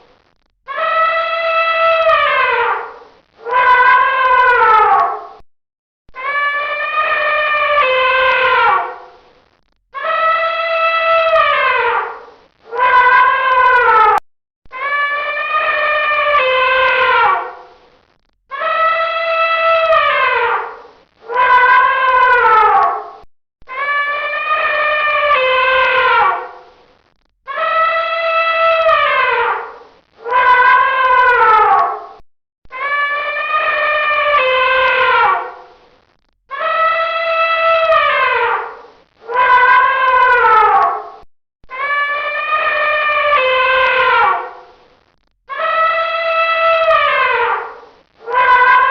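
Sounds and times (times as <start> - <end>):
elephant trumpeting: 41.8 - 44.7, 45.6 - 48.9.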